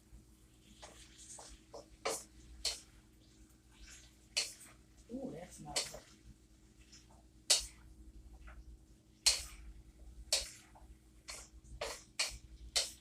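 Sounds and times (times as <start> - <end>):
utensil striking and scraping a pan: 0.8 - 2.9, 3.8 - 4.8, 5.6 - 6.2, 6.8 - 8.6, 9.2 - 13.0.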